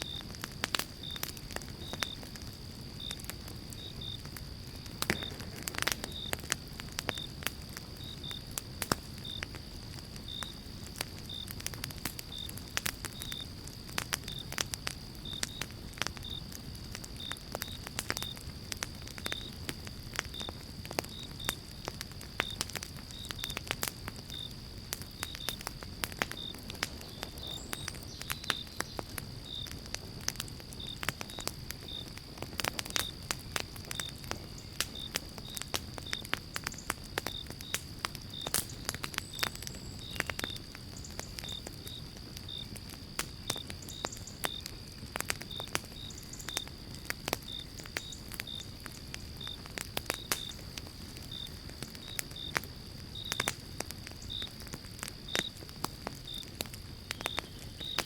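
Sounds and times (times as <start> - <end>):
wood fire crackling and popping: 0.0 - 58.0.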